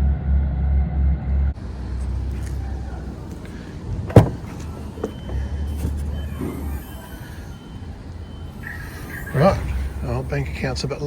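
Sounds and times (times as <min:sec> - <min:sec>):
barge engine rumble: 0:00.0 - 0:11.0
faint high squealing tones: 0:02.3 - 0:11.0.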